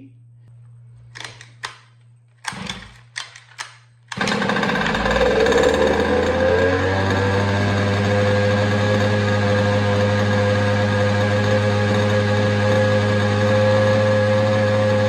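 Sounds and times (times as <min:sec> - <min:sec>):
two-stroke engine starting and running: 0:02.5 - 0:03.4, 0:04.1 - 0:15.0.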